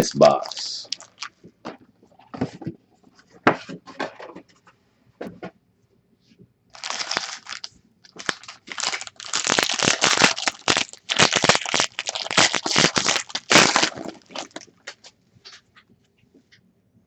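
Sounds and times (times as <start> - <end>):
wrapper crinkling: 0.0 - 1.4, 6.7 - 15.1.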